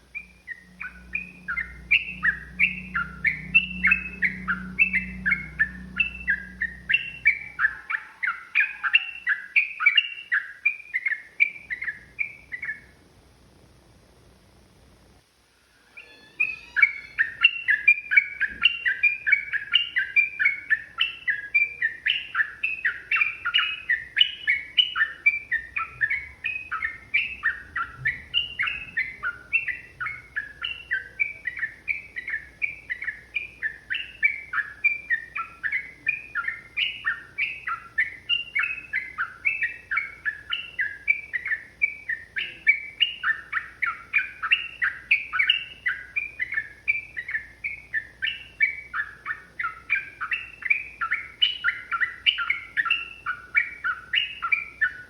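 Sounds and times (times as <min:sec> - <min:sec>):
bird singing quick notes: 0:00.1 - 0:12.8, 0:15.9 - 0:46.6.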